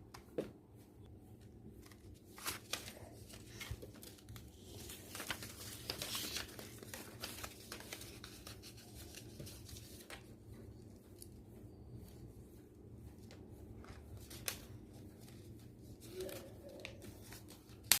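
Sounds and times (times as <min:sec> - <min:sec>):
craft materials rustling and crinkling: 0:01.3 - 0:10.3.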